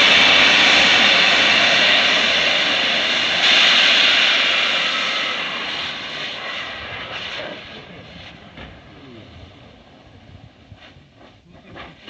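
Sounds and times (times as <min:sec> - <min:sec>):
high-pressure gas hissing: 0:00.0 - 0:10.0.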